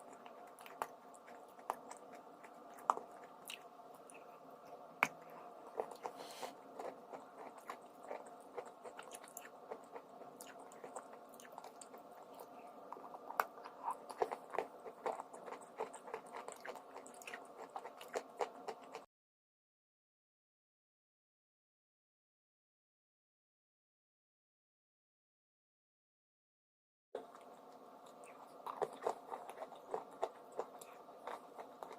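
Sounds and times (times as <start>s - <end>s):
crunchy chewing: 0.0s - 19.1s, 27.2s - 31.9s.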